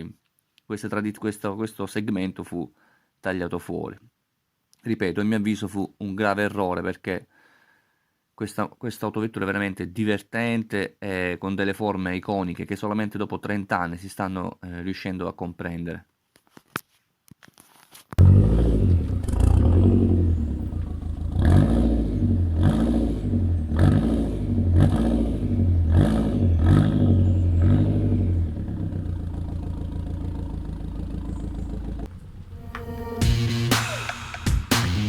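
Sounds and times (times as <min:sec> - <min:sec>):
car engine revving and idling: 0:18.2 - 0:35.0.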